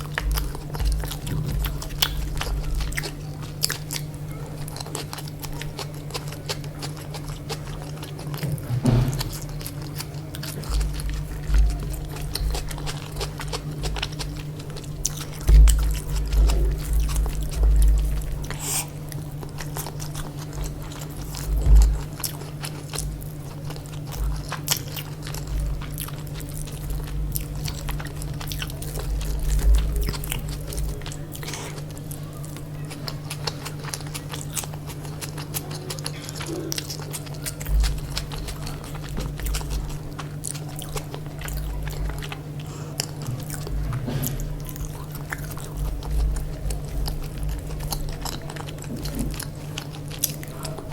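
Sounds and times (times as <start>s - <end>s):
chewing and biting food: 0.0s - 50.9s
steady low hum: 0.0s - 50.9s
low thumps: 8.3s - 14.1s, 15.4s - 19.1s, 21.4s - 22.2s, 43.2s - 48.0s
wet mouth clicks: 18.4s - 19.0s.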